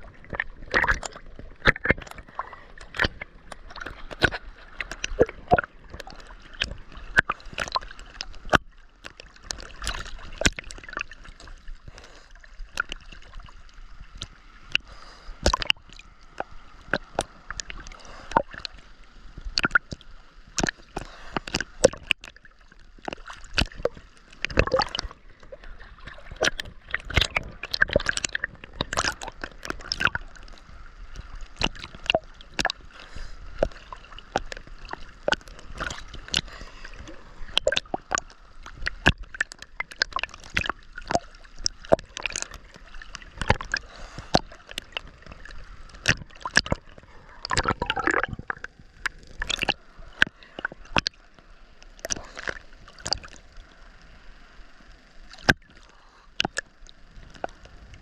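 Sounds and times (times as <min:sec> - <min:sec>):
ocean water sloshing: 0:00.0 - 0:58.0.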